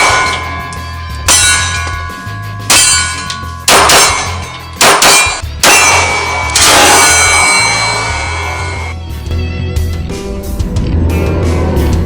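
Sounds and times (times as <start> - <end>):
loud metallic clangs: 0.0 - 8.9
steady low drone: 0.0 - 12.0.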